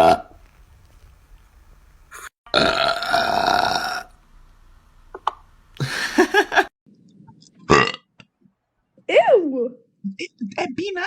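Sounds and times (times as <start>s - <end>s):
man burping: 2.5s - 4.1s, 7.7s - 8.1s.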